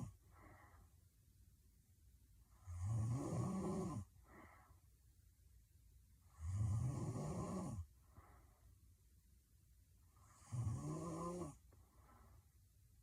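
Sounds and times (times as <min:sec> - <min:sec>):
faint breaths: 0:00.0 - 0:01.2, 0:03.9 - 0:05.1, 0:07.7 - 0:09.0, 0:11.2 - 0:13.0
woman snoring heavily: 0:02.6 - 0:04.1, 0:06.3 - 0:07.8, 0:10.3 - 0:11.6.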